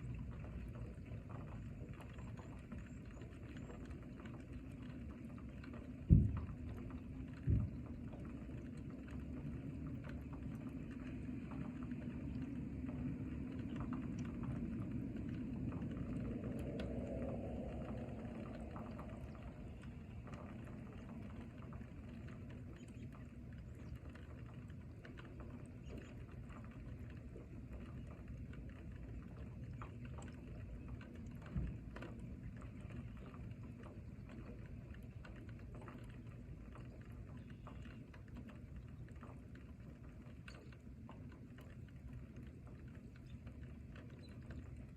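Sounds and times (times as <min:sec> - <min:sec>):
rain falling in a forest: 0:02.2 - 0:22.2.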